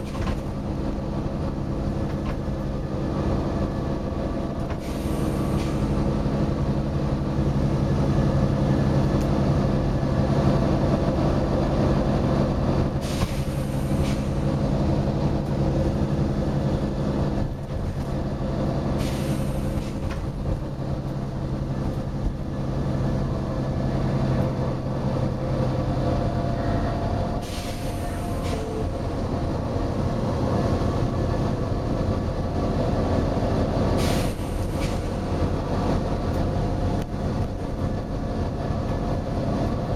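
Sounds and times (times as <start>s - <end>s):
bus diesel engine running: 0.0s - 39.9s
air brake hiss: 4.7s - 6.2s, 13.0s - 14.6s, 19.0s - 20.2s, 27.4s - 29.0s, 34.0s - 35.3s.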